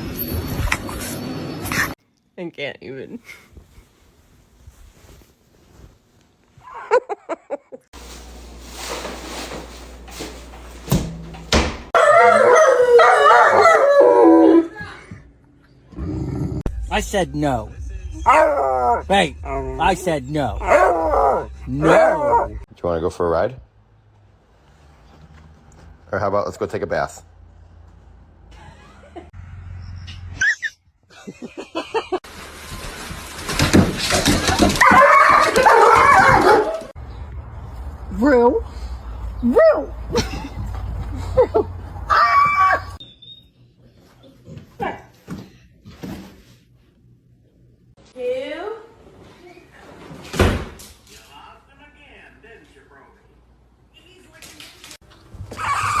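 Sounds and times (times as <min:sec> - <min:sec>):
dog yipping: 0:12.0 - 0:14.3, 0:18.2 - 0:19.8, 0:20.6 - 0:22.6, 0:34.8 - 0:36.9, 0:39.4 - 0:39.9, 0:42.1 - 0:43.4, 0:55.5 - 0:56.0
dog howling and whining: 0:12.0 - 0:14.7, 0:18.2 - 0:19.9, 0:20.6 - 0:22.7, 0:34.8 - 0:36.9, 0:42.1 - 0:43.0, 0:55.5 - 0:56.0
dog whining and whimpering: 0:18.2 - 0:19.8, 0:20.6 - 0:22.6, 0:55.6 - 0:56.0.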